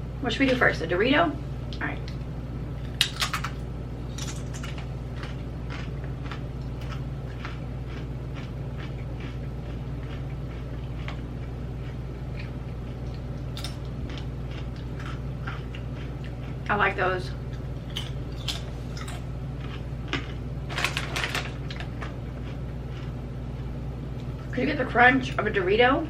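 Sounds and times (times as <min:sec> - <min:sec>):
steady low hum: 0:00.0 - 0:26.0
person crunching tortilla chips: 0:04.2 - 0:16.5.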